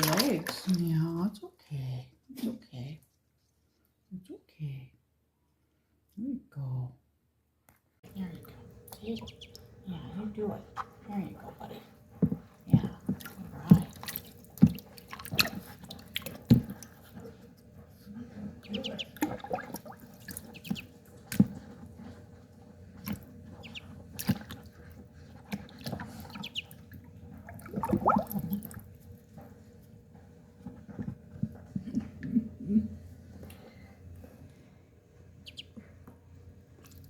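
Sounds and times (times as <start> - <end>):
duckling peeping: 9.0 - 9.7, 18.6 - 21.0, 23.6 - 24.4, 26.2 - 26.8, 35.4 - 35.8
water splashing in a basin: 12.7 - 17.1, 18.6 - 21.5, 23.0 - 24.9, 25.5 - 28.9.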